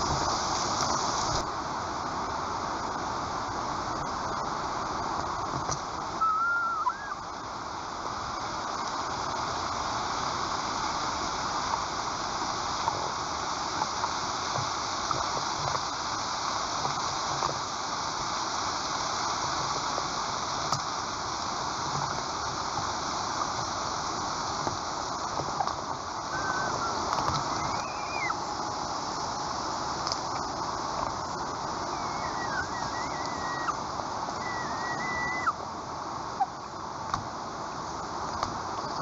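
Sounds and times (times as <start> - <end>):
rushing outdoor noise: 0.0 - 39.0
high whistled bird call: 6.2 - 7.2, 26.3 - 28.5, 31.8 - 35.6.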